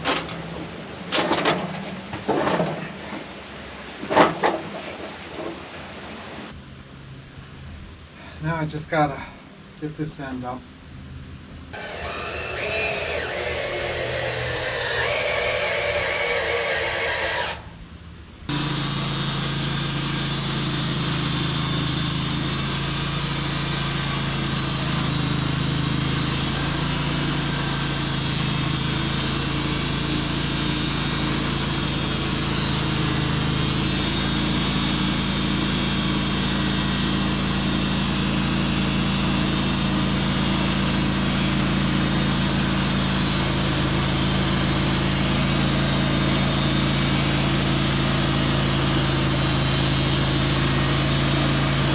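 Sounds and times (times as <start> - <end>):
sawmill engine running: 11.7 - 17.8, 18.5 - 51.9.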